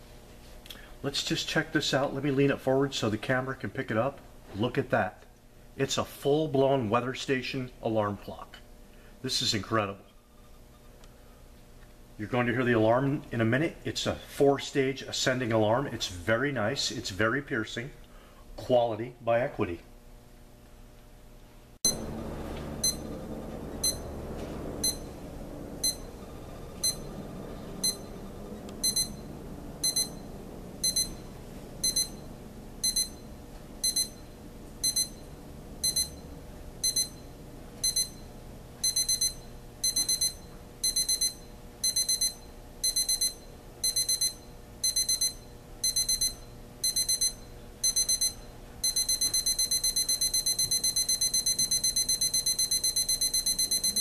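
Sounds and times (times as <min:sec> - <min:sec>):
alarm clock beeping: 0:22.8 - 0:24.2, 0:24.8 - 0:25.2, 0:25.8 - 0:27.2, 0:27.8 - 0:36.2, 0:36.8 - 0:54.0.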